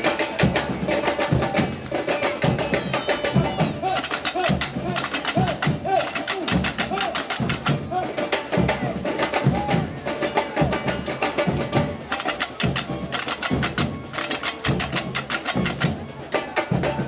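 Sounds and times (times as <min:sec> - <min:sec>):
samba drum ensemble: 0:00.0 - 0:17.0
deep bass drum beats: 0:03.4 - 0:08.1, 0:11.5 - 0:16.1.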